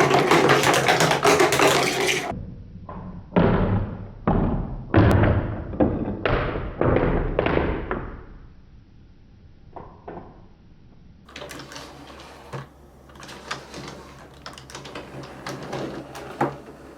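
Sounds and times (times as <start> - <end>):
marbles clattering on plastic track: 0.0 - 2.3, 11.3 - 16.9.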